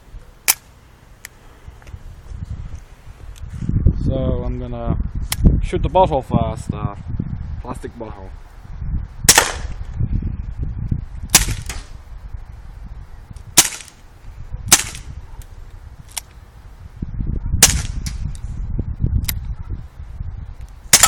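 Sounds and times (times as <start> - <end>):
wind rumble on microphone: 1.4 - 21.0
air pistol shots: 9.3 - 9.8, 11.3 - 11.9, 13.6 - 14.0, 14.7 - 15.1, 17.6 - 18.2.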